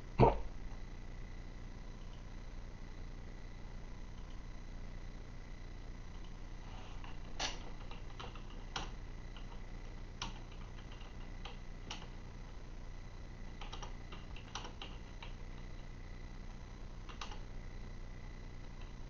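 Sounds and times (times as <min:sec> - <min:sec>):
person hiccupping: 0:00.2 - 0:00.5.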